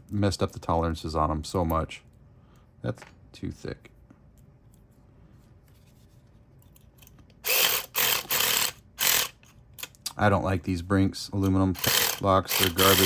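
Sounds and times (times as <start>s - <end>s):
electric saw pick rattling in lock: 11.8s - 13.0s.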